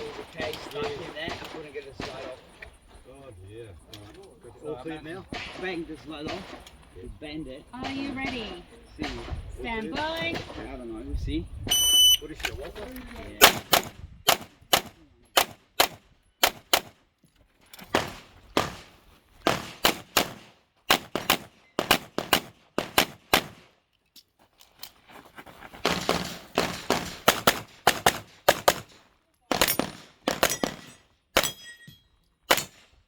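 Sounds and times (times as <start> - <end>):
handgun shots: 25.9 - 28.9, 32.5 - 32.8.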